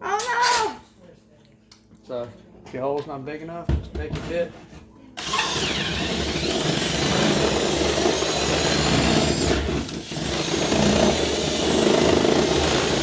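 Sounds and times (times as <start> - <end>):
power drill drilling into wall: 5.2 - 13.0.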